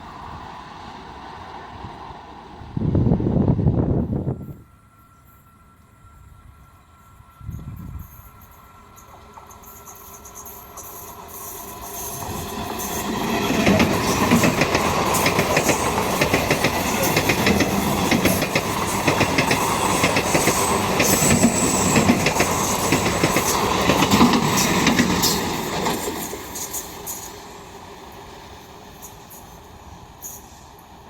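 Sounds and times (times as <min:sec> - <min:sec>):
train wheels clattering over rails: 0:09.0 - 0:29.5.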